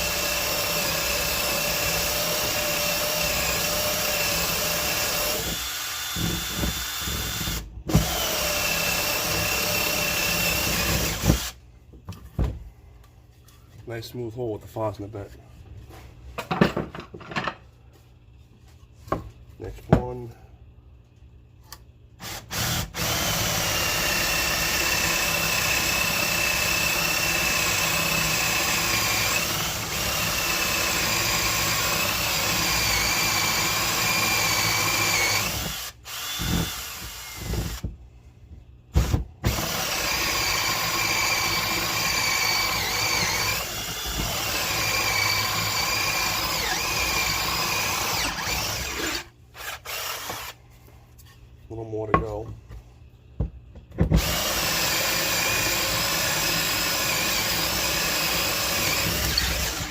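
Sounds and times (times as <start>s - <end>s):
power drill boring into wood: 0.0s - 11.6s, 22.2s - 37.9s, 39.0s - 50.6s, 54.2s - 59.9s.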